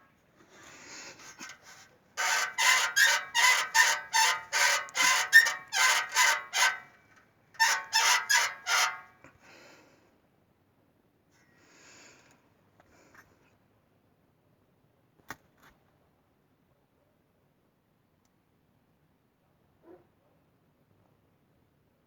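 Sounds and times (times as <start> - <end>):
exhaust muffler squeaking: 2.2 - 6.8, 7.6 - 9.0.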